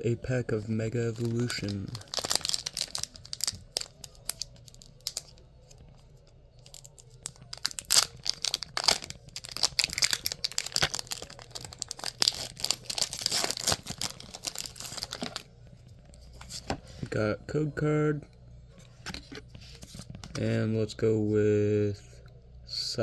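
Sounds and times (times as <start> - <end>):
foil wrapper crackling: 0.6 - 5.8, 6.6 - 15.5.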